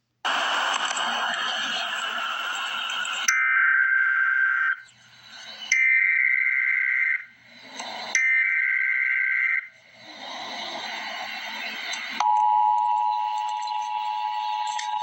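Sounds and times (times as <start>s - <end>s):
hiss: 0.3s - 3.3s, 9.8s - 12.2s
data bursts: 0.8s - 15.0s
two-tone attention signal: 12.2s - 15.0s.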